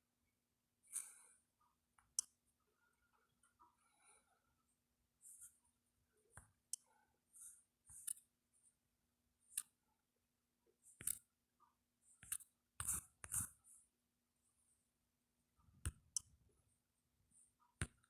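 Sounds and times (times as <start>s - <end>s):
faint clicks and hissy ticks: 0.9s - 3.8s, 6.3s - 8.8s.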